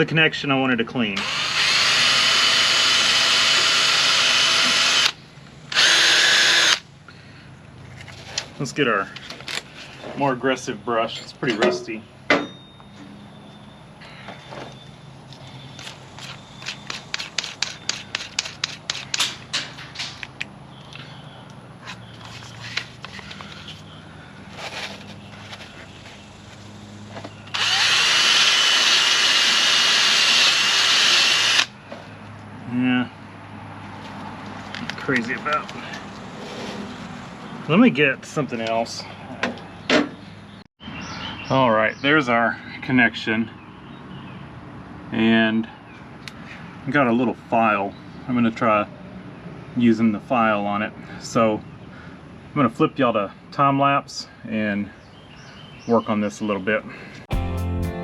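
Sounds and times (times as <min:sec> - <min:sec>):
power drill with wire brush: 0:01.2 - 0:06.8, 0:27.5 - 0:31.7.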